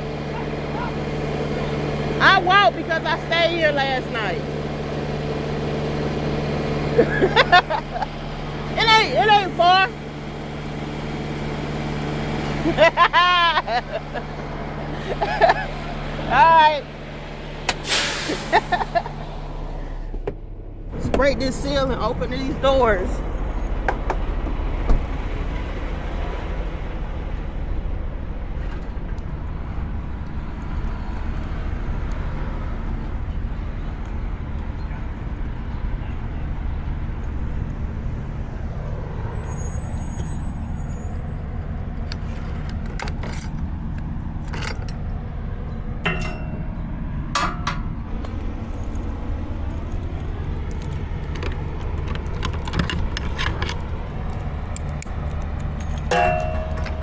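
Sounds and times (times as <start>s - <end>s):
diesel engine droning: 0.0s - 57.0s
metal latches clinking: 42.0s - 45.1s, 46.0s - 57.0s.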